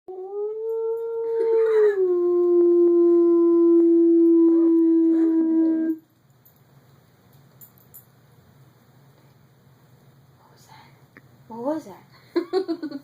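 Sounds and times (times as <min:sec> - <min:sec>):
dog howling: 0:00.1 - 0:06.0.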